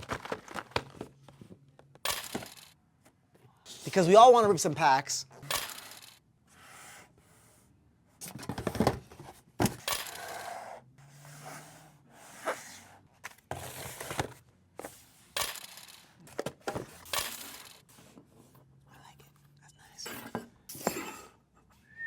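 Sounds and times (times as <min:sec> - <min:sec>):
items rustling and tapping: 0:00.0 - 0:06.2, 0:08.2 - 0:10.4, 0:12.5 - 0:18.7, 0:20.1 - 0:21.3.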